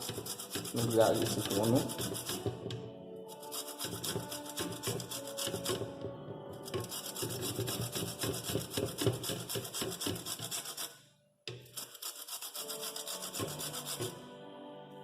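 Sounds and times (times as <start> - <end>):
lime rasping on a hand grater: 0.0 - 2.5, 3.3 - 5.9, 6.6 - 10.9, 11.7 - 14.2.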